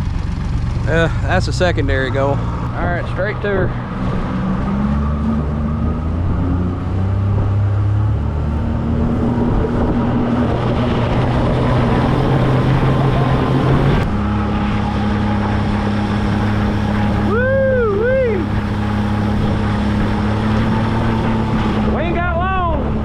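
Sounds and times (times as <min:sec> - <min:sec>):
outboard motor running: 0:00.0 - 0:23.0
water rushing: 0:00.0 - 0:23.0.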